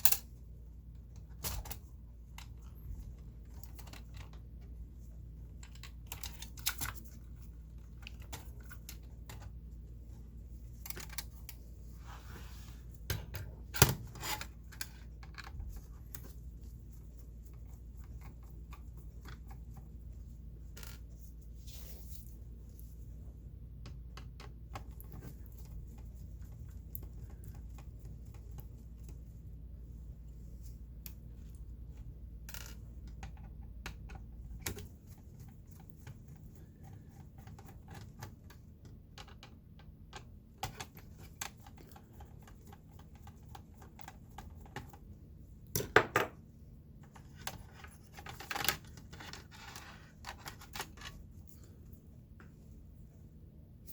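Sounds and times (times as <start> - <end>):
small parts clicking and clattering: 0.0 - 9.6
low steady hum: 0.0 - 53.9.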